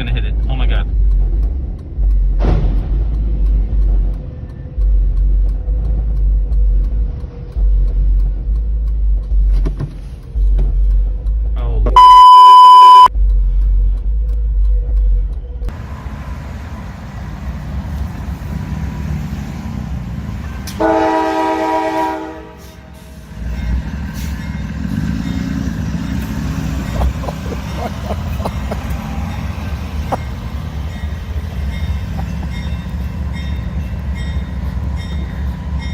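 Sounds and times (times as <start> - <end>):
train rumbling past: 15.7 - 35.9
train horn blast: 20.7 - 23.0.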